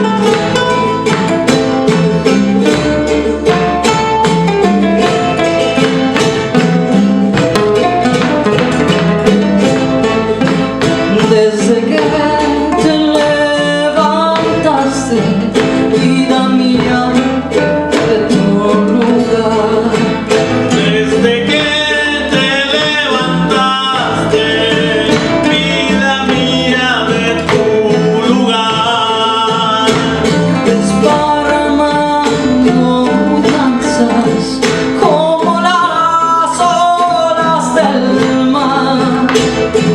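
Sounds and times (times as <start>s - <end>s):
bass: 0.0s - 39.9s
percussion: 0.0s - 39.9s
plucked guitar: 0.0s - 39.9s
strummed guitars: 0.0s - 39.9s
voices singing: 10.8s - 39.9s.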